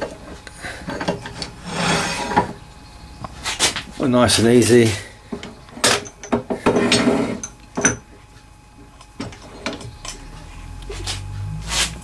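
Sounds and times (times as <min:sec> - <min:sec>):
metal sliding scrape: 0:00.9 - 0:02.6, 0:06.7 - 0:07.5.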